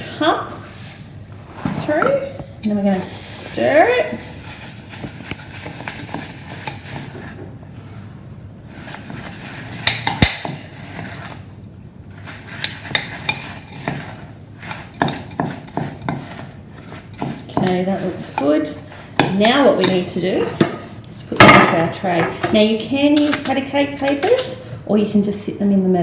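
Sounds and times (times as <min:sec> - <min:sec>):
spoon scraping container: 0:12.1 - 0:20.9.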